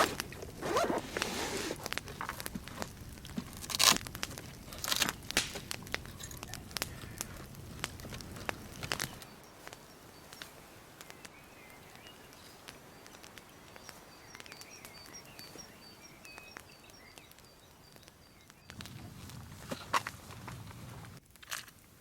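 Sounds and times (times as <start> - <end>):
outdoor background hiss: 0.0 - 22.0
light ticks: 4.0 - 18.9
birds chirping: 4.5 - 19.1.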